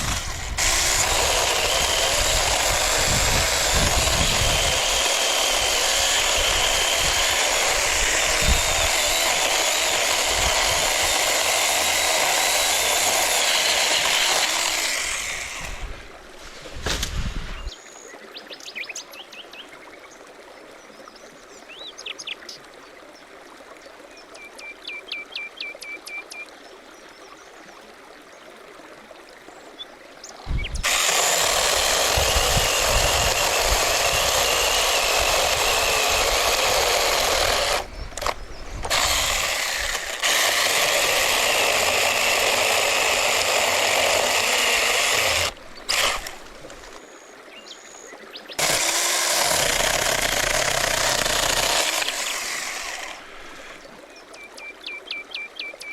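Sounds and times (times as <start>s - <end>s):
rototiller engine running: 0.0s - 15.8s, 30.8s - 47.0s, 48.6s - 53.2s.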